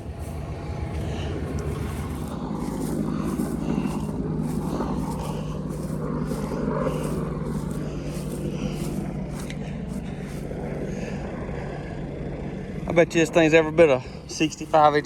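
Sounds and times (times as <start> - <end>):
tractor engine running: 0.0 - 11.5, 12.8 - 15.0.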